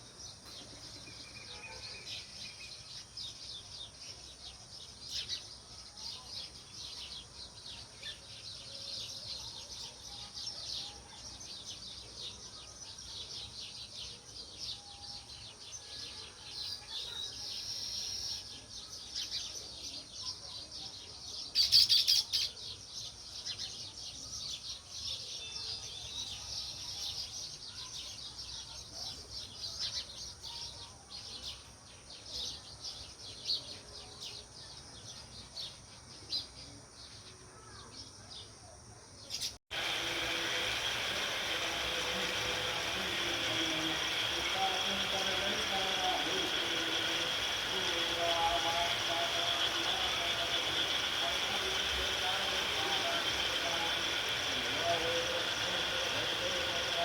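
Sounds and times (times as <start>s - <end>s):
sparrows chirping: 0.0s - 57.0s
steady loud noise: 39.7s - 57.0s.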